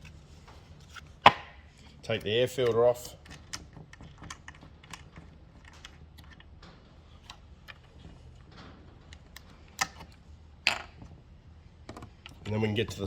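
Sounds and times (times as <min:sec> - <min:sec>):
plastic parts clicking: 0:00.8 - 0:06.5, 0:07.2 - 0:11.1.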